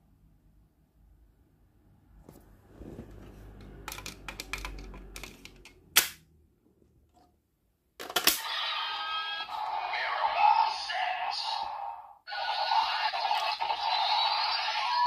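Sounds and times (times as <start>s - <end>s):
plastic toy clicks and rattles: 3.8s - 6.2s, 8.0s - 8.4s
toy electronic sound: 8.4s - 15.0s.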